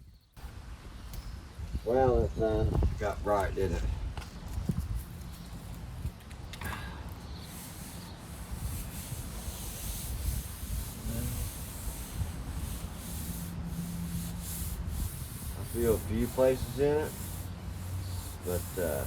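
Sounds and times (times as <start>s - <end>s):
sandpaper scraping: 7.3s - 19.0s.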